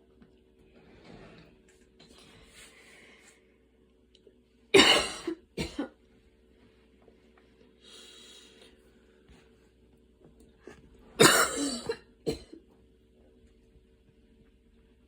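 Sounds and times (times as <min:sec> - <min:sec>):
woman coughing: 0:04.8 - 0:06.0, 0:11.2 - 0:12.6
breathy inhales: 0:07.8 - 0:09.2.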